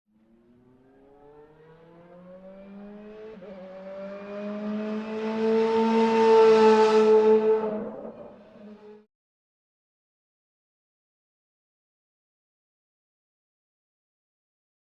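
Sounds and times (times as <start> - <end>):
car engine accelerating: 0.2 - 9.0.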